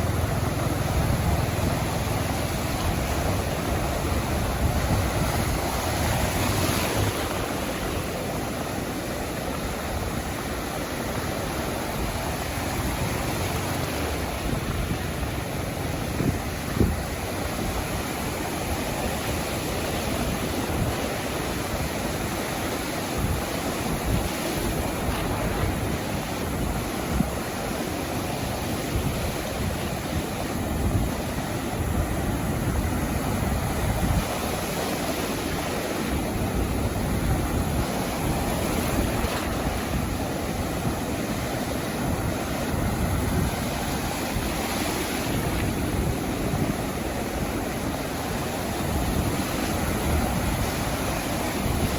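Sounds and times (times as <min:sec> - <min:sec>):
waves washing onto sandy beach: 0:00.0 - 0:51.9
wind rumbling on microphone: 0:00.0 - 0:51.9.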